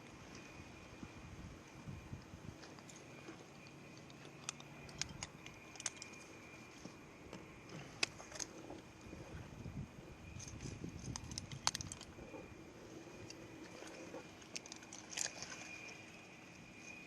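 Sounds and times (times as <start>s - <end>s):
sharp clicks and clinks: 3.6s - 6.3s.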